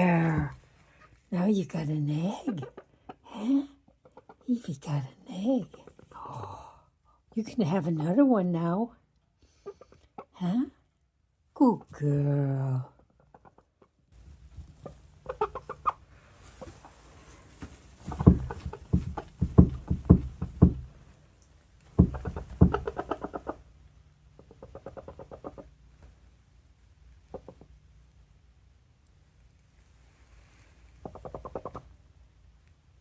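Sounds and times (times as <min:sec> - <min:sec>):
hen clucking: 0:02.1 - 0:06.1, 0:09.5 - 0:10.4, 0:12.7 - 0:14.0, 0:14.7 - 0:17.1, 0:18.0 - 0:20.9, 0:22.0 - 0:25.8, 0:27.2 - 0:27.8, 0:31.0 - 0:32.0
sharp taps: 0:18.1 - 0:21.0, 0:22.0 - 0:23.0.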